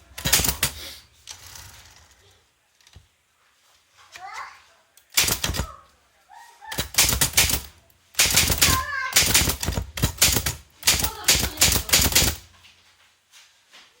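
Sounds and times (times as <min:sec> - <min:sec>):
typewriter keys clattering: 0:00.0 - 0:01.4, 0:05.2 - 0:05.8, 0:06.7 - 0:12.5.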